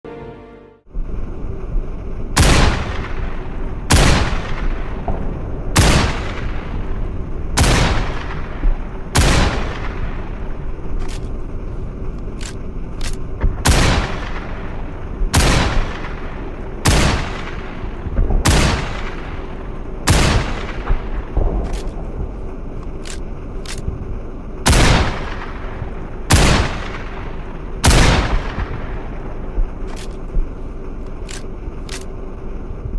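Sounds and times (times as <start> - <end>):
rifle shots with echo: 2.4 - 11.3, 12.4 - 23.9, 24.6 - 30.3.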